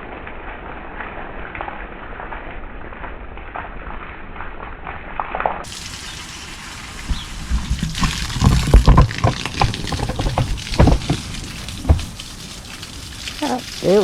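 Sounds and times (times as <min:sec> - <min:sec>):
water pouring onto plants: 0:05.6 - 0:14.0
low thumps: 0:07.0 - 0:12.7.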